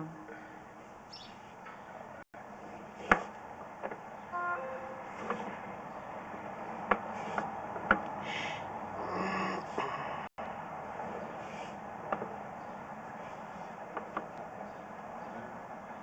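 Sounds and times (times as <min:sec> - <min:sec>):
short tone: 0:04.3 - 0:05.2
sharp knocks and clicks: 0:06.8 - 0:08.2, 0:12.1 - 0:12.4, 0:13.9 - 0:14.5.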